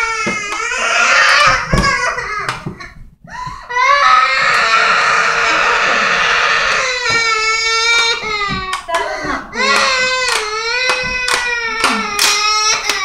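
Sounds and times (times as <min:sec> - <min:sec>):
boy crying and wailing: 0:00.0 - 0:13.0.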